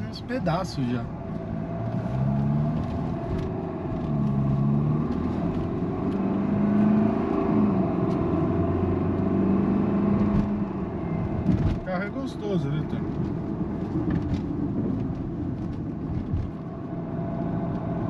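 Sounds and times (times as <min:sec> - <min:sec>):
road rumble: 0:00.0 - 0:18.0.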